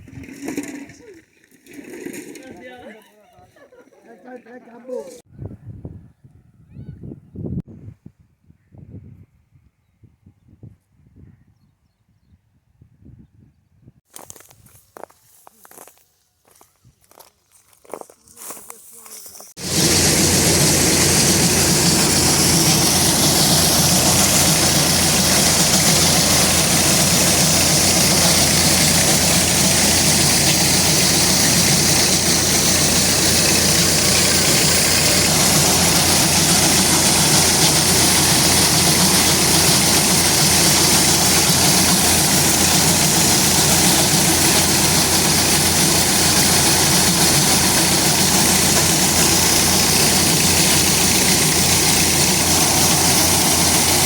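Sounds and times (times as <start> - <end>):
harvester engine running: 19.6 - 54.0.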